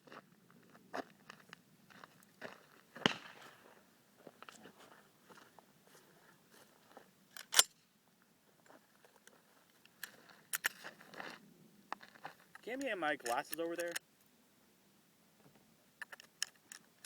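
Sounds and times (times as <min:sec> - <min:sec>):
faint crunching: 0:00.0 - 0:07.6, 0:08.6 - 0:14.0.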